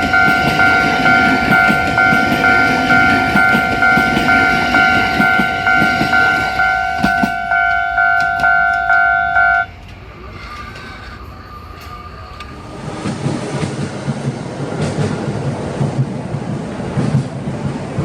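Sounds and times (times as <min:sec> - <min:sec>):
level crossing bell ringing: 0:00.0 - 0:09.7
train rumble and wheel clicks: 0:00.0 - 0:18.0.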